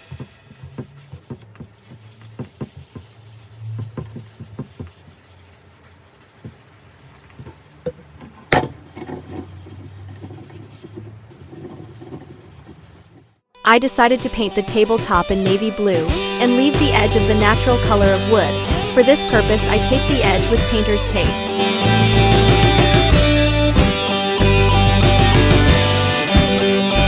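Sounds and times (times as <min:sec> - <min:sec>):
sponge scuffing on wood: 0:00.0 - 0:13.3.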